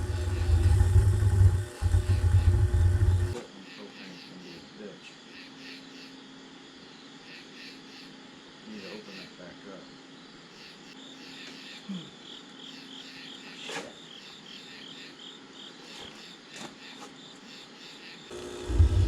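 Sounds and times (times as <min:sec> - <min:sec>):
propane burner roaring: 0:00.0 - 0:03.4, 0:18.3 - 0:19.0
crickets chirping: 0:00.0 - 0:19.0.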